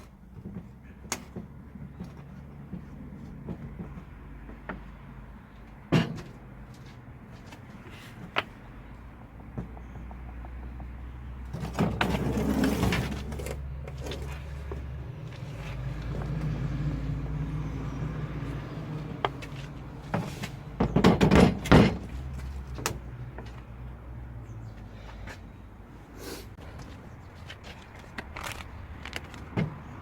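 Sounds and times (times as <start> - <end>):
knocks and rattling clatters: 0.0 - 16.7, 18.9 - 23.7.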